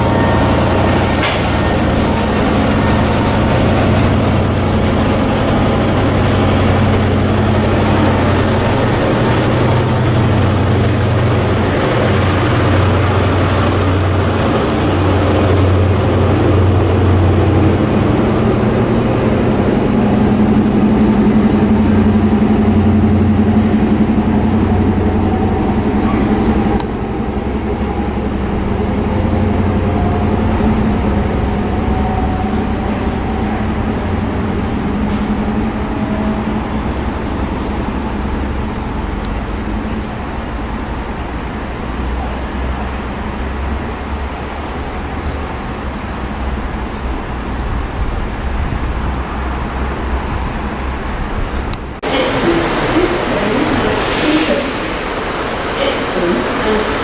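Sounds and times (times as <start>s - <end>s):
diesel train engine hum: 0.0s - 57.0s
wheel and rail noise: 0.0s - 57.0s.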